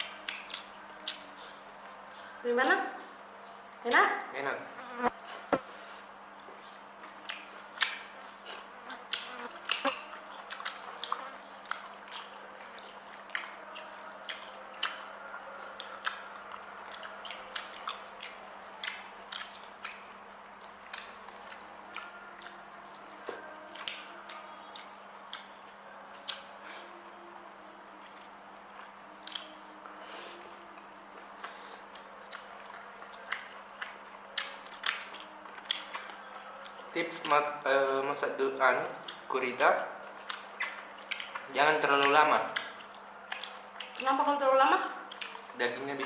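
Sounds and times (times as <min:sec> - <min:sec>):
person chewing food: 0:06.3 - 0:26.5, 0:27.9 - 0:37.3, 0:39.0 - 0:39.3, 0:40.0 - 0:44.1, 0:44.8 - 0:46.0.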